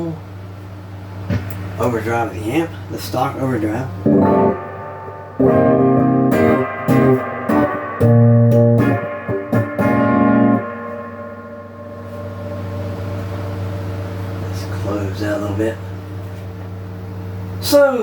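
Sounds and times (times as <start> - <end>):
distorted electric guitar chords: 4.0 - 14.9.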